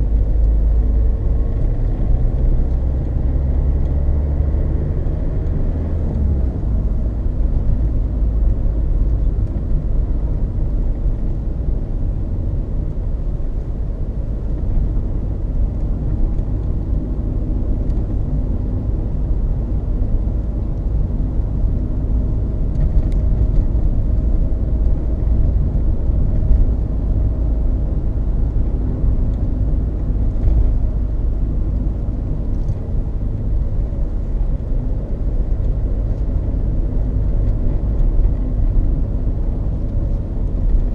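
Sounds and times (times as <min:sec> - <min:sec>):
tyre road noise in car cabin: 0:00.0 - 0:40.9.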